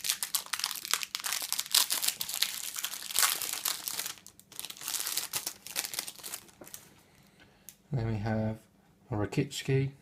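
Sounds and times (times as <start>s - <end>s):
foil wrapper crinkling: 0.0s - 6.9s.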